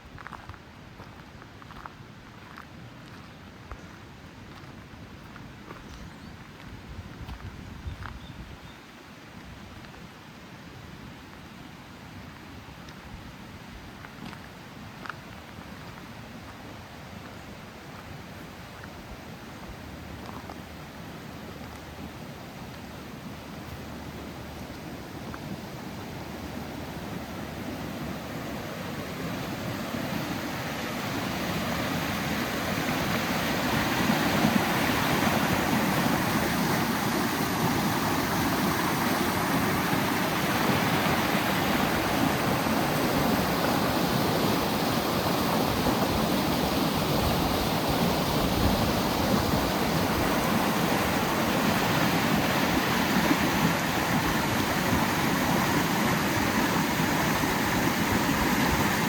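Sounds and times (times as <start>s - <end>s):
rushing creek water: 14.2s - 59.0s.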